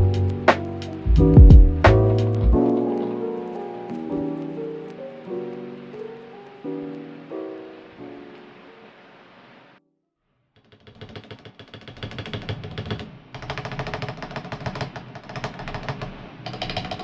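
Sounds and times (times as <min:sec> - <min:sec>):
background music: 0:00.0 - 0:09.2.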